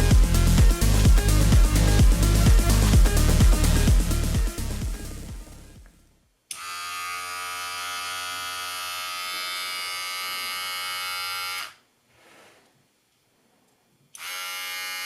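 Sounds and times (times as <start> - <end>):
hair clipper running: 6.5 - 11.8, 14.2 - 15.0.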